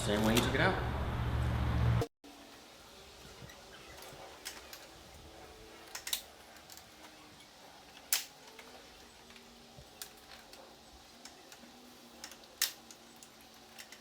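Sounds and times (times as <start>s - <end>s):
plastic parts clicking: 5.8s - 7.2s, 8.0s - 14.0s.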